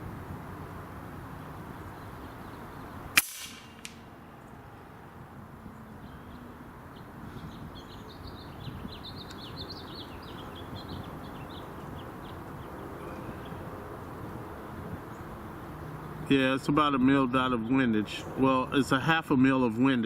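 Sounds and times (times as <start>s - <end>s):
wind noise on microphone: 0.0s - 4.1s, 5.6s - 16.2s
birds chirping: 1.2s - 19.0s
air rifle shot: 3.1s - 4.1s.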